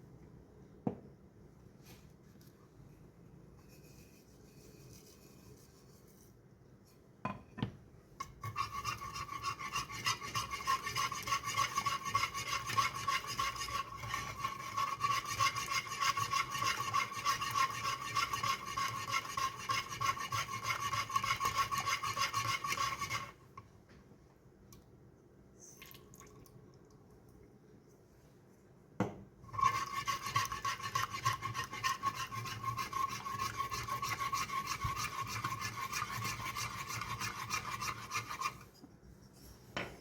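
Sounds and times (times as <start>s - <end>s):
whisking in a bowl: 8.2s - 23.4s, 29.5s - 38.7s.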